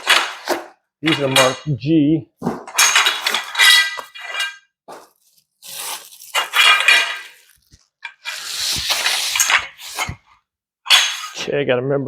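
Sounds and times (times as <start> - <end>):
metal parts clinking: 2.7 - 4.6, 6.3 - 10.2, 10.9 - 11.4
plastic wrapping crinkling and tearing: 5.0 - 10.0.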